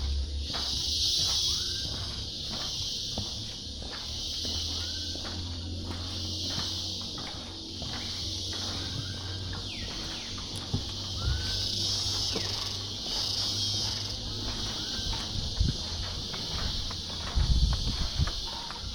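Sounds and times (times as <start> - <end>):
high-pitched insect chorus: 0.0 - 18.9
soft low thumps: 0.0 - 18.9
bird chirps and whistles: 1.1 - 2.8, 8.0 - 13.3.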